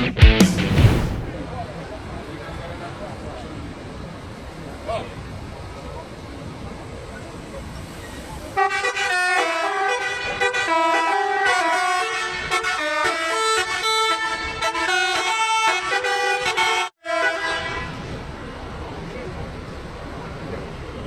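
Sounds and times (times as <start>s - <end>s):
air horns playing a tune: 8.6s - 17.9s.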